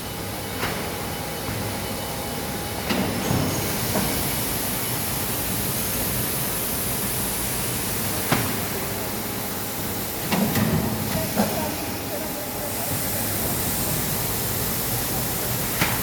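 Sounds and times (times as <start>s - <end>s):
filling machine running: 3.2s - 16.0s.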